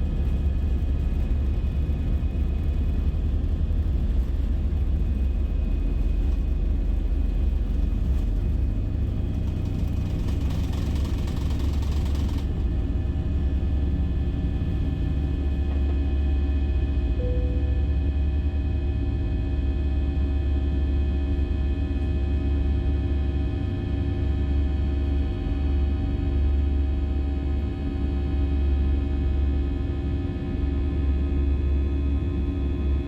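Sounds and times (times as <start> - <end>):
thin steady whines: 0.0 - 23.5
jet engine and airflow rumble: 0.0 - 33.0.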